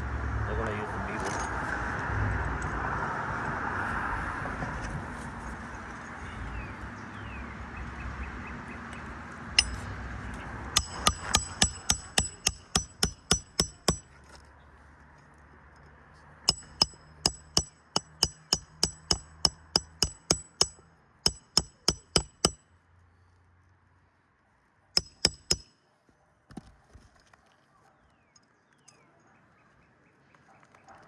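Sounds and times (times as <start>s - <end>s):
hammer striking roofing nails: 9.6s - 9.9s, 10.8s - 14.1s, 16.5s - 22.6s, 25.0s - 25.7s.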